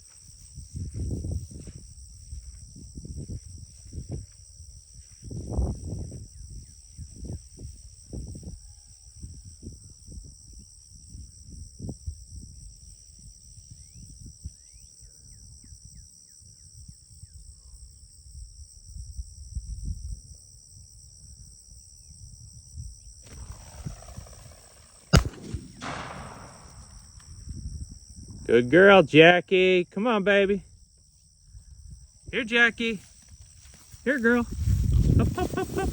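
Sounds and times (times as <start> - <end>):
insect drone: 0.0 - 35.9
wind on microphone: 0.6 - 12.6, 22.6 - 28.5, 34.0 - 35.9
sharp crack: 23.3 - 27.4.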